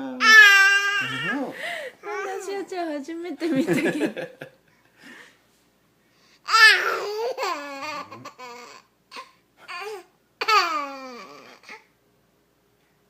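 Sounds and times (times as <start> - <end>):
baby laughing: 6.5 - 11.5.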